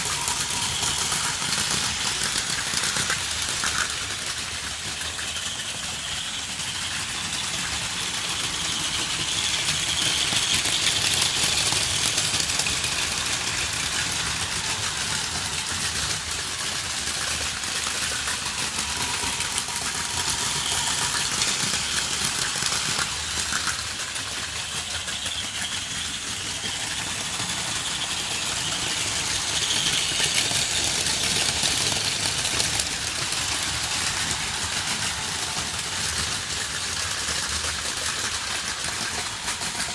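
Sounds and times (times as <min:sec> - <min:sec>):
toy train motors whirring: 0:00.0 - 0:39.9
wheels rattling over plastic rails: 0:00.0 - 0:39.9.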